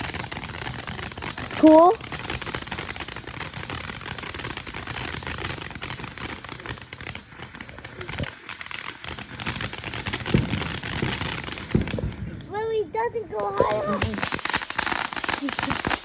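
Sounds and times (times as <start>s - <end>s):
firework crackling: 0.0s - 16.0s
dull firework pop: 10.3s - 12.5s.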